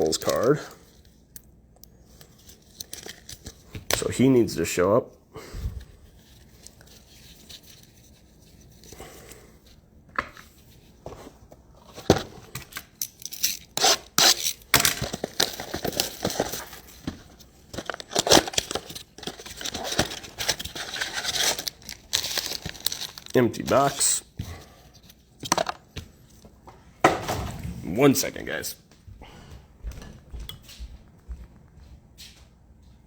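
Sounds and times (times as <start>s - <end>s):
wrappers tearing and crinkling: 12.8s - 17.0s, 17.7s - 24.2s.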